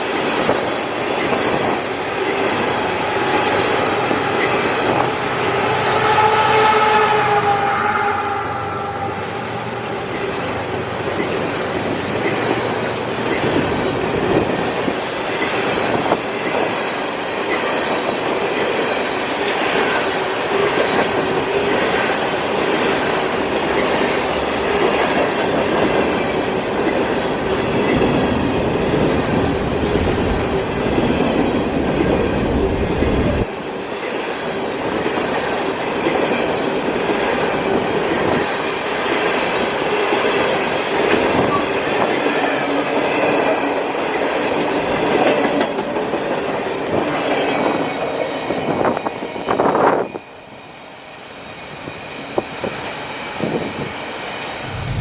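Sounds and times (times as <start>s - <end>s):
train low rumble: 0.0s - 33.7s, 53.4s - 55.0s
high wheel squeal: 3.5s - 10.6s
train wheels clacking over rail joints: 34.1s - 47.7s.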